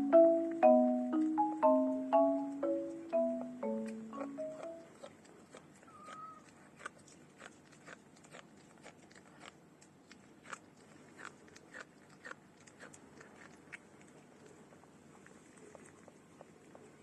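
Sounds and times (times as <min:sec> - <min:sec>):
cat crunching dry food: 0:04.6 - 0:17.0.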